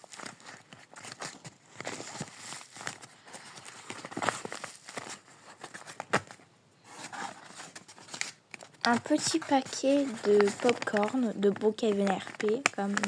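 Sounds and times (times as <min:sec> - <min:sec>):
squishy toy packet crinkling: 0:07.5 - 0:13.0.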